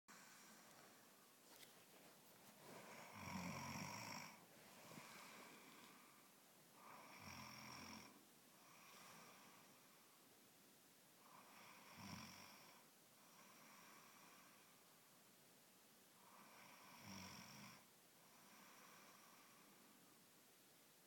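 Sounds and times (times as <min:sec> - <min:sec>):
soft breaths: 0:00.1 - 0:10.5, 0:11.1 - 0:15.2, 0:16.0 - 0:21.0
woman snoring: 0:02.9 - 0:05.9, 0:06.8 - 0:09.7, 0:11.3 - 0:14.6, 0:16.3 - 0:17.8.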